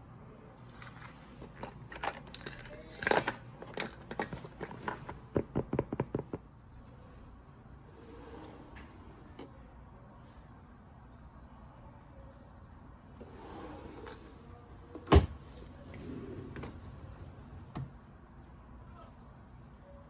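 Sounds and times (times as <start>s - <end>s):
handling rustling and clicking: 0.7s - 6.4s.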